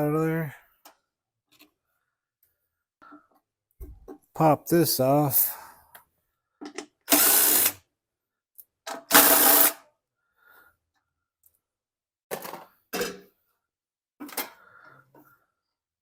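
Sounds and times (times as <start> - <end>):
small power tool motor: 7.1 - 7.8.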